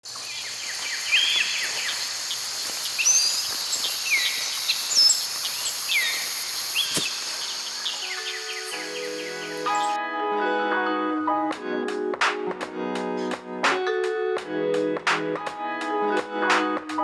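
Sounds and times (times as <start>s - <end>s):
birds whistling: 0.1s - 10.0s
high insect drone: 0.1s - 10.0s
music: 7.7s - 17.0s.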